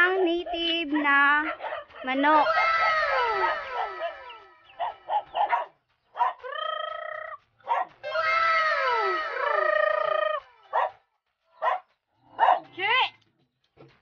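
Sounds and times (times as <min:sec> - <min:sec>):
dogs barking: 0:00.0 - 0:06.6, 0:07.6 - 0:08.1, 0:10.7 - 0:11.0, 0:11.6 - 0:12.8
dogs crying: 0:00.0 - 0:11.0.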